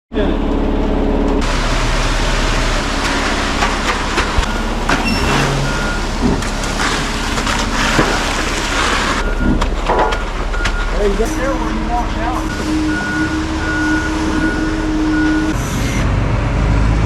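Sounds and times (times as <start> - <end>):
diesel engine running: 0.2 - 17.0.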